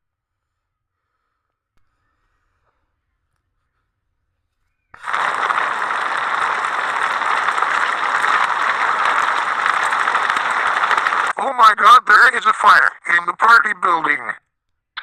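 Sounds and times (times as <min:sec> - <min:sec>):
fire crackling: 0:05.0 - 0:11.4.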